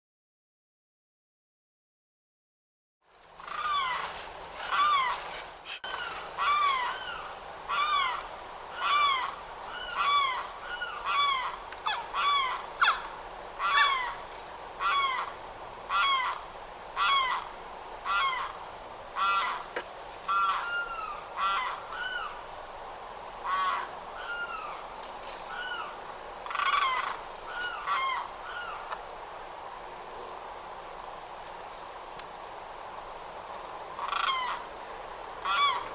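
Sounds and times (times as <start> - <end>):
limpkin wailing calls: 3.4 - 18.6, 19.2 - 19.7, 20.3 - 22.4, 23.4 - 24.8, 25.5 - 28.9, 34.0 - 34.7, 35.4 - 35.9.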